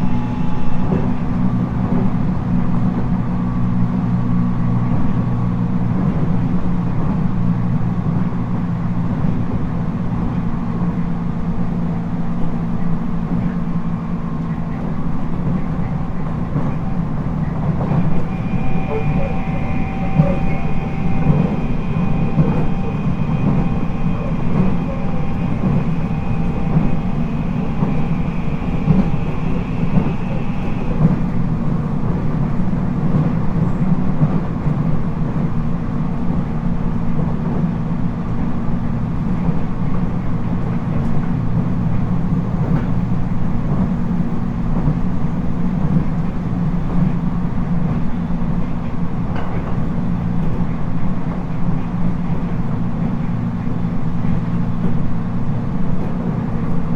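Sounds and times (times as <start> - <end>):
train motors and wheels rumbling: 0.0 - 56.9
high steady whine: 15.8 - 32.1.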